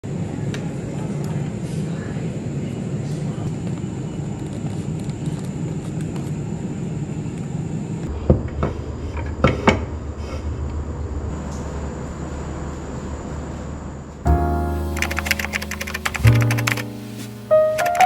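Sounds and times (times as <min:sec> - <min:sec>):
low background rumble: 0:08.1 - 0:14.3.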